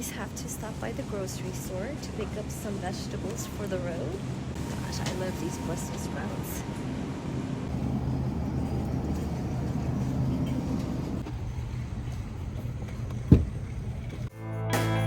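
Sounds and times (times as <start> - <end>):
vehicle road noise: 6.3 - 14.3.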